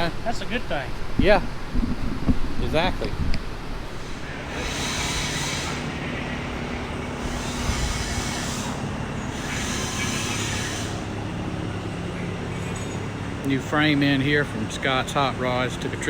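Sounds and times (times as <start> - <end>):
vehicle engine hum: 0.0 - 16.0
hissing noise: 3.8 - 11.5.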